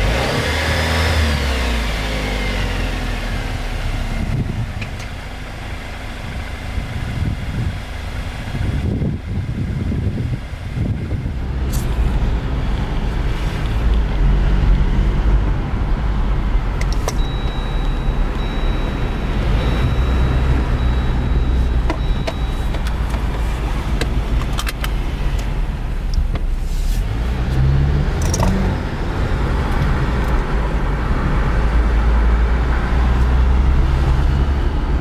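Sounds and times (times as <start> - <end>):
car engine droning: 0.0 - 35.0
sharp clicks: 16.8 - 19.1, 28.2 - 28.7.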